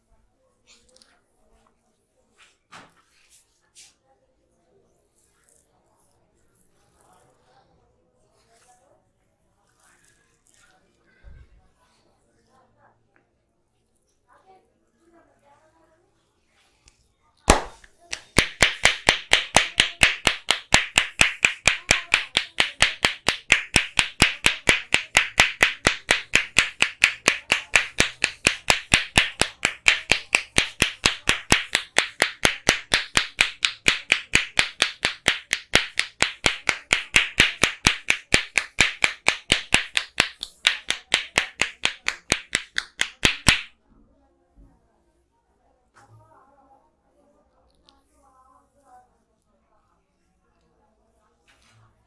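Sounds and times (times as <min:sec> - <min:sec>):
hands striking head in massage: 0:17.5 - 0:43.7.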